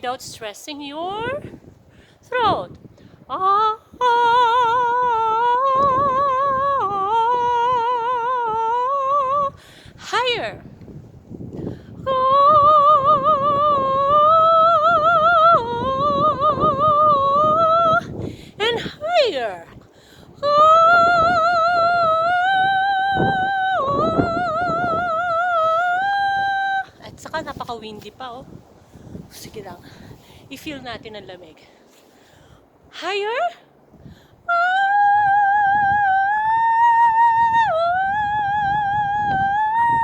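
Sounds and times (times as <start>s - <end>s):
woman singing sustained note: 3.3s - 10.6s, 12.0s - 19.3s, 20.4s - 27.0s, 34.4s - 40.0s.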